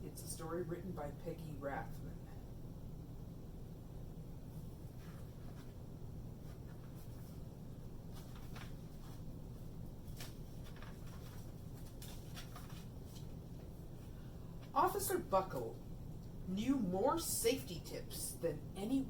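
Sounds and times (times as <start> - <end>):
steady low hum: 0.0 - 19.0
book pages rustling: 4.5 - 14.7.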